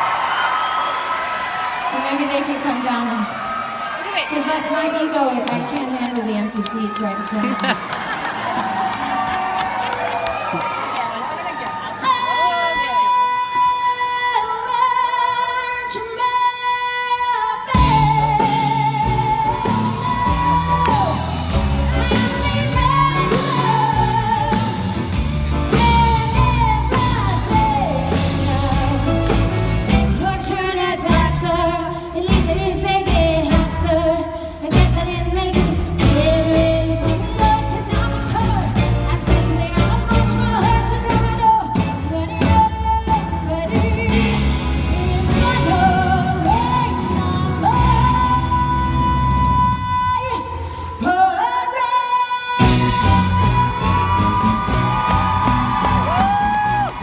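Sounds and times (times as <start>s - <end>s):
woman singing lead vocal: 12.0s - 57.0s
band playing live pop: 17.7s - 50.2s, 52.5s - 57.0s.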